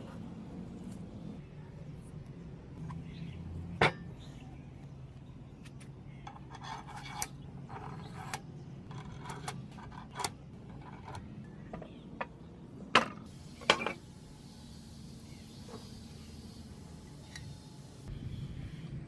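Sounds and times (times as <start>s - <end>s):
steady low hum: 0.0s - 19.0s
metal parts clicking and scraping: 6.2s - 11.9s.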